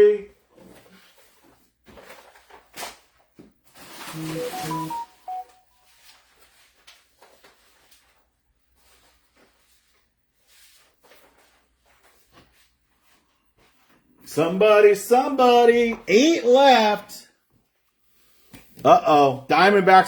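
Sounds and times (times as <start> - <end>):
electronic chime descending beeps: 4.2 - 5.5.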